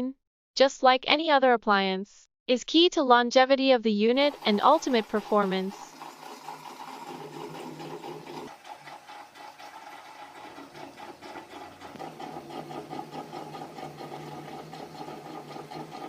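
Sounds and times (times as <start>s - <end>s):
fast even rattle: 4.2s - 16.0s
washing machine motor hum: 4.2s - 16.0s.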